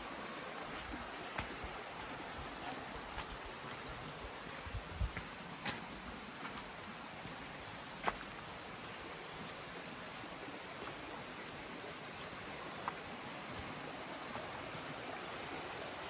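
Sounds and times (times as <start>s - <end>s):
insect pulsed chirping: 3.5s - 7.2s.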